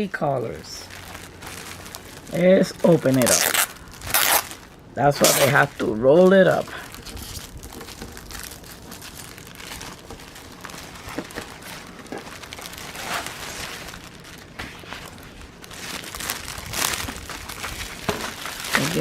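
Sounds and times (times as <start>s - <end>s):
packaging crinkling and rustling: 0.4s - 19.0s.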